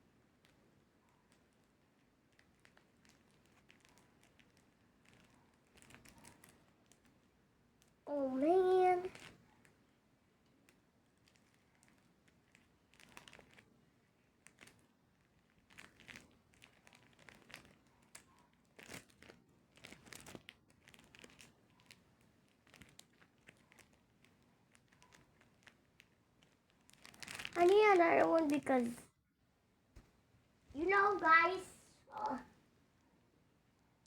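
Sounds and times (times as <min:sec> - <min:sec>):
adhesive tape crinkling: 0:01.3 - 0:08.0, 0:09.0 - 0:09.7, 0:10.6 - 0:28.9.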